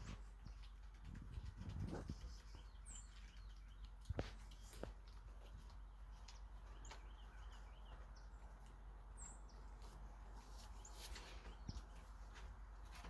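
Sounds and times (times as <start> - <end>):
bird chirps and calls: 1.9 - 5.0, 5.6 - 12.3.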